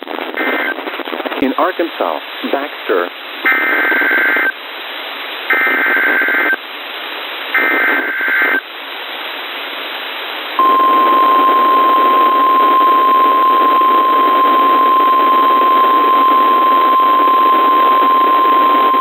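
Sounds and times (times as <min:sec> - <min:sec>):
radio hiss: 0:00.0 - 0:09.5
steady warning alarm tone: 0:10.6 - 0:19.0.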